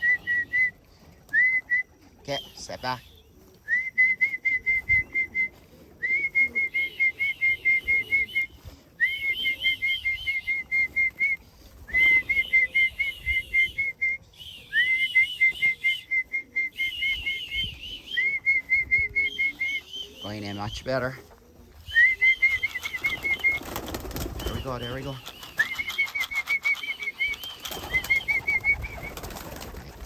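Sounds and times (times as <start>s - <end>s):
person whistling chirping notes: 3.7s - 20.4s, 21.8s - 23.6s
higher whistled line: 3.7s - 20.5s, 21.8s - 29.3s.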